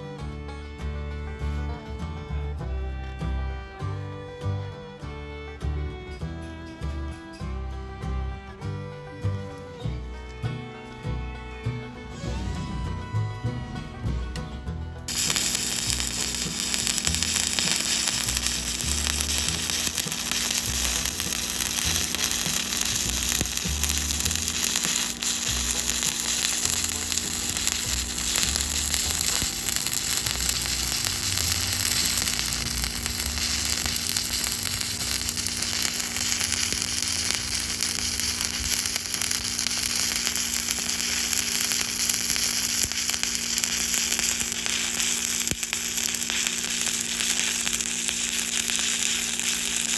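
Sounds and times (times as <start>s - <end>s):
low steady hum: 0.1s - 49.9s
welding arc crackling sizzle: 15.1s - 49.9s.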